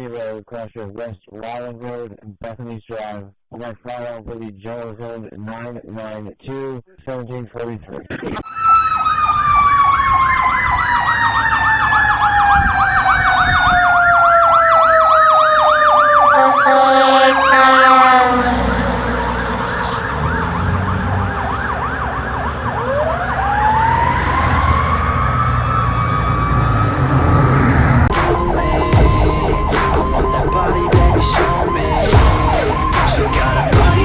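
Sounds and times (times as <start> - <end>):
electronic siren yelp: 8.4 - 34.0
short loud horn blast: 16.2 - 19.5.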